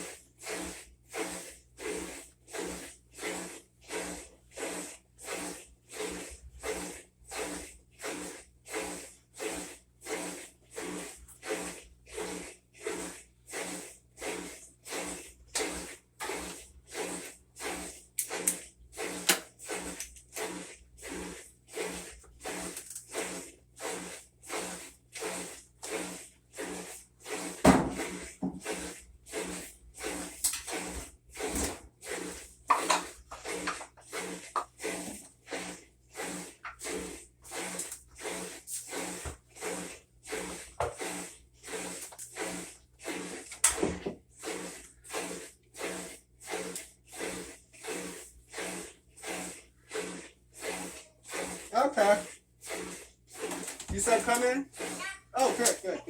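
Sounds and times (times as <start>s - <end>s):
washing machine water swishing: 0.0s - 56.0s
washing machine thump: 27.6s - 28.6s, 43.8s - 44.2s.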